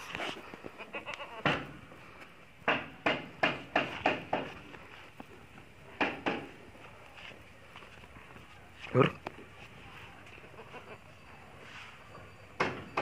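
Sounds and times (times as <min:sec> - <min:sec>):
goats bleating: 0:00.8 - 0:01.4.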